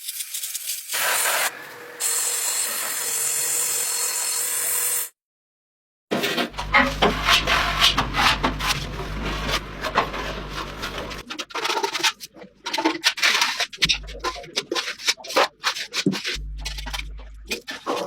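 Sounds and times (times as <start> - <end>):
hand rubbing and scraping: 6.2 - 18.0.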